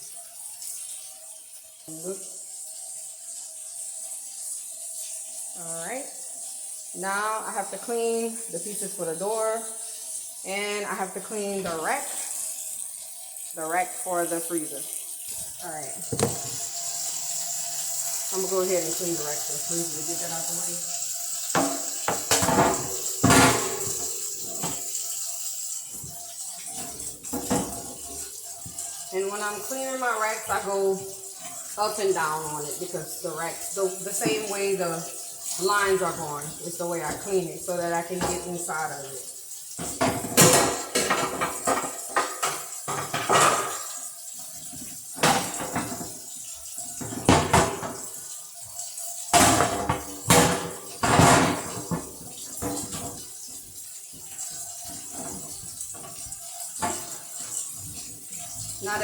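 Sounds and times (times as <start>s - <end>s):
tap water running into sink: 0.0s - 59.0s
metal rack knocking against sink: 16.0s - 16.6s, 21.6s - 24.8s
rack knocking: 16.0s - 16.6s.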